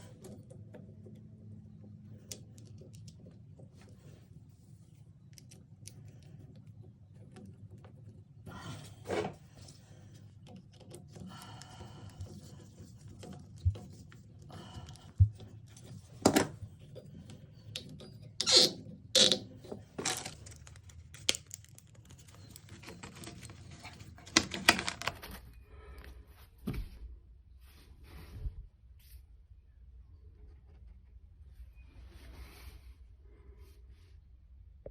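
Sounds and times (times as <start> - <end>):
metal and plastic parts handled: 17.8 - 25.4.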